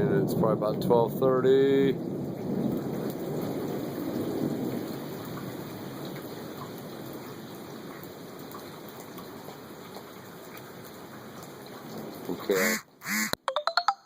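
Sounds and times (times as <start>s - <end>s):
thunder rumble: 0.0s - 6.3s
heavy rain: 0.0s - 13.4s.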